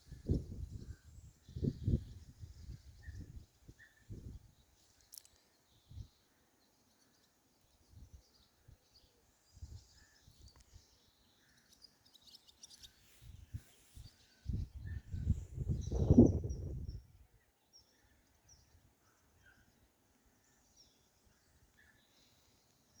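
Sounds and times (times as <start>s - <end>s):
wind rumble on microphone: 0.0s - 4.6s, 5.8s - 6.2s, 9.5s - 10.6s, 13.2s - 17.4s
faint bird chirps: 0.0s - 23.0s.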